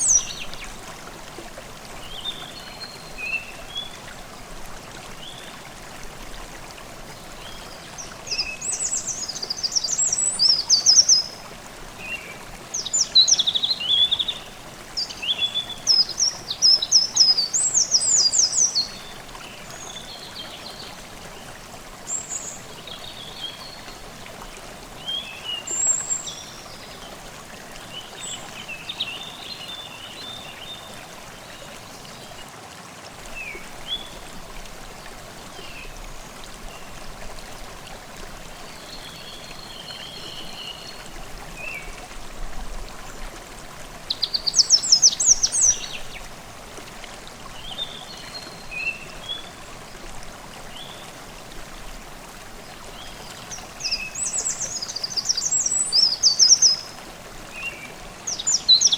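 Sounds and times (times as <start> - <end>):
songbirds singing: 0.0 - 0.8, 7.1 - 24.2, 25.0 - 32.5, 44.1 - 46.4, 52.7 - 58.9
stream babbling: 0.0 - 58.9.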